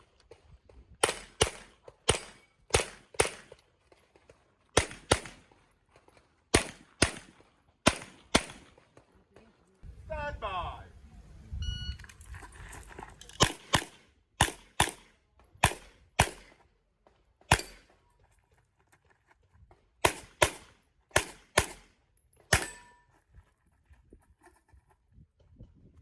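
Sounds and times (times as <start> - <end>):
handgun shots: 1.0 - 3.6, 4.8 - 5.4, 6.5 - 8.7, 13.3 - 16.6, 17.5 - 17.8, 20.0 - 21.9, 22.5 - 22.9
shot timer beep: 11.6 - 12.1.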